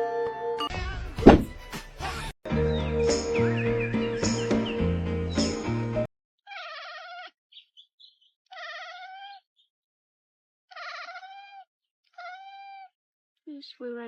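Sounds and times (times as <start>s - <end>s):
cat chirps: 6.5s - 7.3s, 8.5s - 9.4s, 10.7s - 12.9s
cat meowing: 6.5s - 7.3s, 8.5s - 9.4s, 10.7s - 12.9s.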